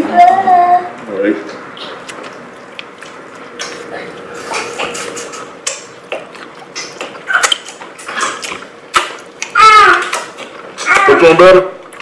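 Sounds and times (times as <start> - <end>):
shellfish and utensils clattering: 3.1 - 11.2.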